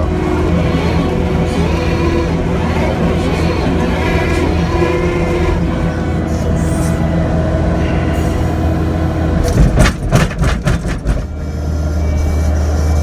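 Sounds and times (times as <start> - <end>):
diesel engine running: 0.0 - 13.0
knocks and clatter: 9.4 - 11.5.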